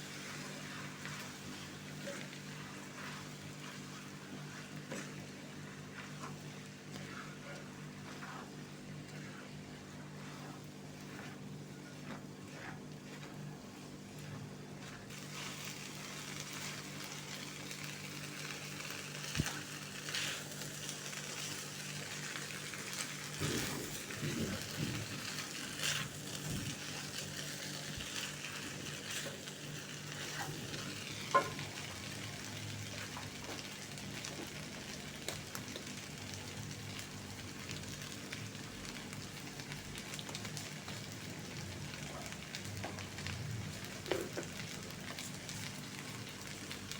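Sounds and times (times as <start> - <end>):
food sizzling in a pan: 0.0 - 46.9
stirring: 0.1 - 15.4.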